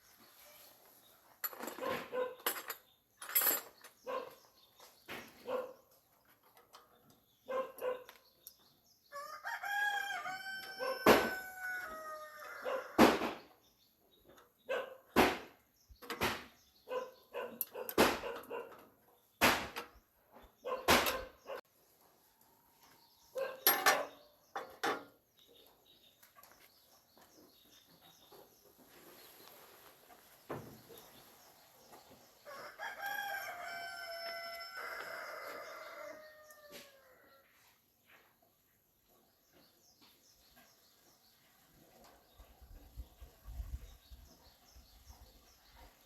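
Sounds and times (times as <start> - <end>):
rooster crowing: 9.1 - 13.0, 32.5 - 37.4
sharp knocks and clanks: 15.2 - 16.6.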